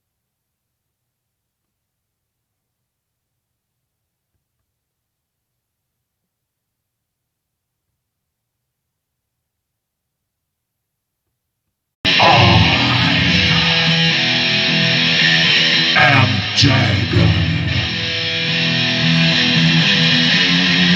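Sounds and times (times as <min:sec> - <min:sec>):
rock music with electric guitar: 0:12.1 - 0:20.9.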